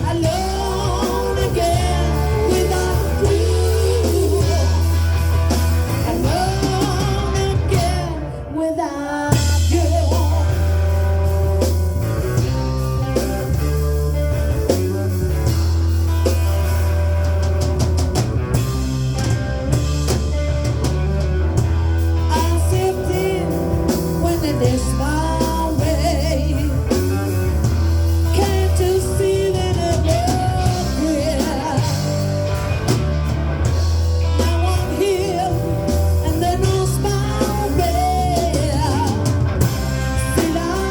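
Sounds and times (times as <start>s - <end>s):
person singing: 0.0s - 10.9s, 22.2s - 27.4s, 28.2s - 32.4s, 34.3s - 40.9s
live rock band playing: 0.0s - 40.9s.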